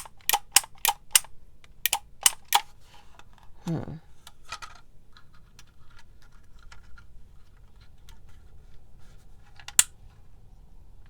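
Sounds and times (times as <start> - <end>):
label maker plastic clicks: 0.0 - 1.3, 1.9 - 2.7.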